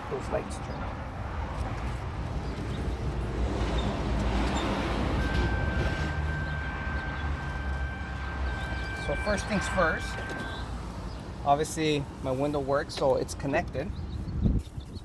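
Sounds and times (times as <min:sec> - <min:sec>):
vehicle engine rumble: 0:00.0 - 0:15.0
thin high tone: 0:04.4 - 0:10.8.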